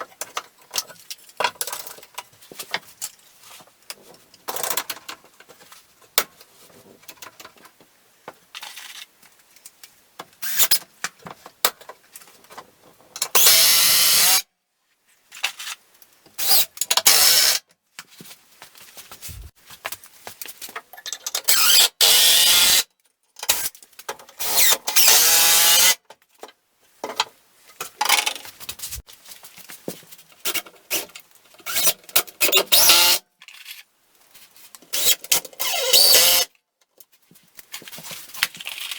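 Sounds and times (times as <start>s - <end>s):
power tool running: 13.4s - 14.4s.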